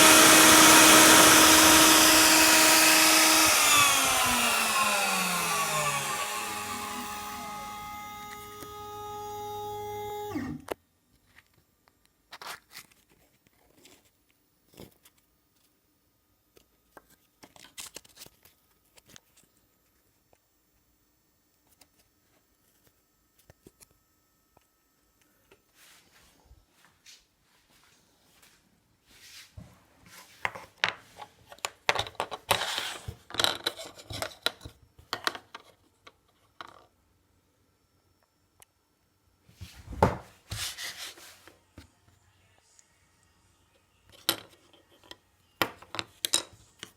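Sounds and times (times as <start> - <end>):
cnc router spindle whining: 0.0 - 10.7.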